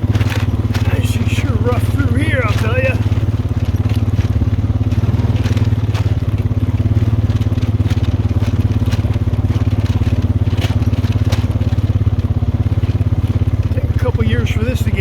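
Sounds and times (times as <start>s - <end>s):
atv engine running: 0.0s - 15.0s
knocks and rattles on rocky ground: 0.0s - 15.0s.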